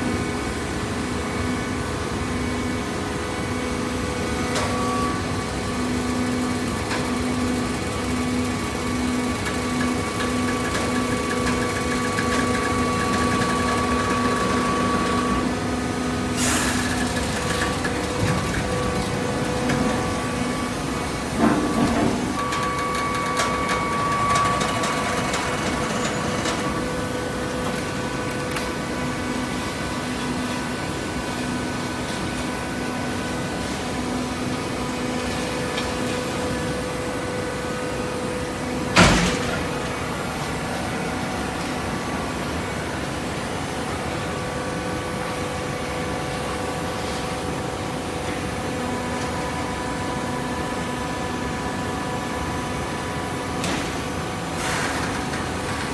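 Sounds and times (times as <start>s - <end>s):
paper baler machine hum: 0.0s - 55.9s
loud clunk: 39.0s - 40.1s.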